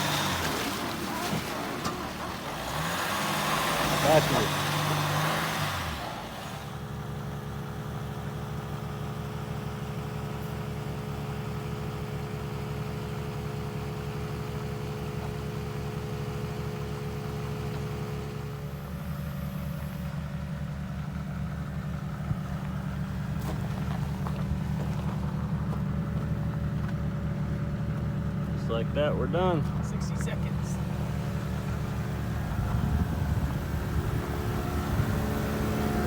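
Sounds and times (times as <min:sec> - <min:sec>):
vehicle engine idling: 0:00.0 - 0:36.0.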